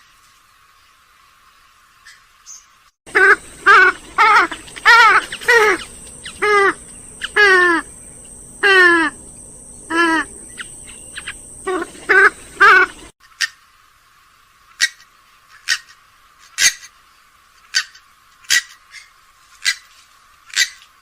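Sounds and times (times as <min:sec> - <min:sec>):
swamphen calling: 0:02.0 - 0:13.6.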